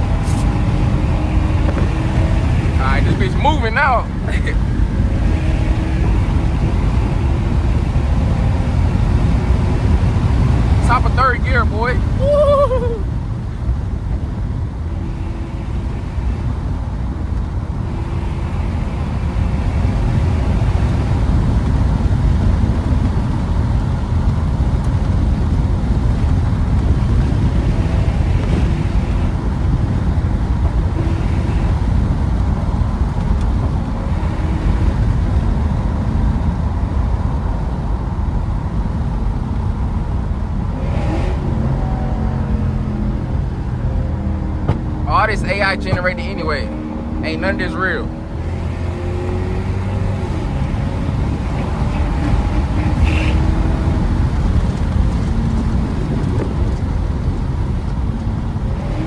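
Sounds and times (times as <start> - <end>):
loud car exhaust note: 0.0 - 59.0
road noise: 0.0 - 59.0.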